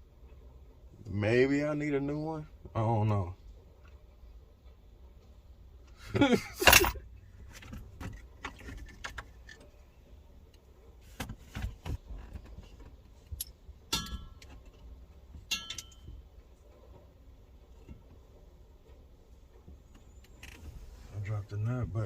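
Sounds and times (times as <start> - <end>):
loud metal clinks: 15.5 - 16.1
metallic clicks of tools: 15.5 - 16.1.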